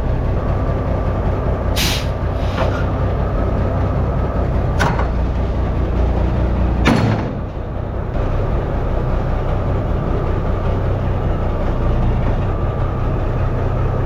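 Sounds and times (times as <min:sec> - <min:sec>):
diesel engine idling: 0:00.0 - 0:14.0
air brake hisses: 0:01.8 - 0:02.9.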